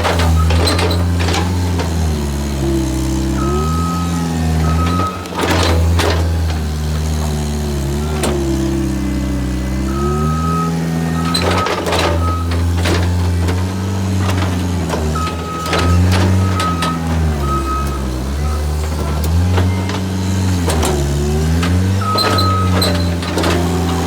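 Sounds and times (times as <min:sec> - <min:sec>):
skid steer engine under load: 0:00.0 - 0:24.0
reverse alarm beeping: 0:00.2 - 0:01.5, 0:03.3 - 0:06.2, 0:09.9 - 0:12.7, 0:15.2 - 0:19.9, 0:22.0 - 0:23.2.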